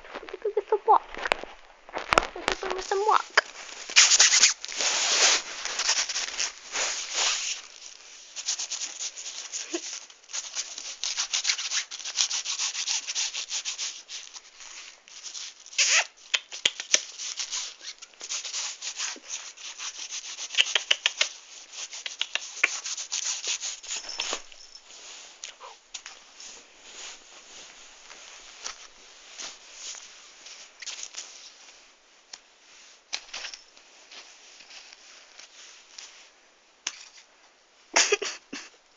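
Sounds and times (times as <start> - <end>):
close rubbing and scratching: 0.0 - 25.4.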